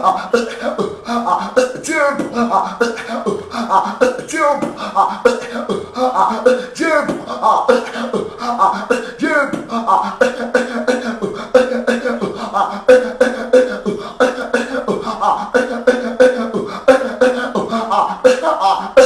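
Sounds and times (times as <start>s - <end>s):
person beatboxing: 0.0s - 19.0s.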